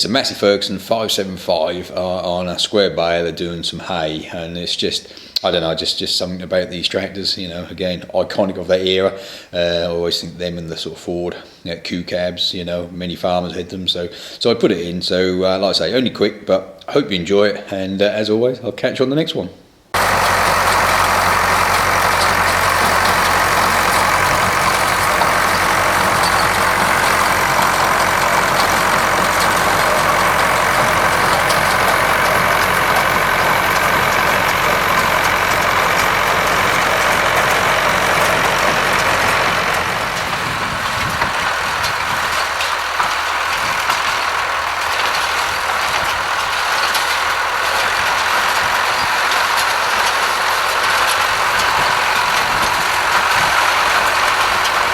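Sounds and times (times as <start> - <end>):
tractor diesel engine running: 19.9 - 54.9.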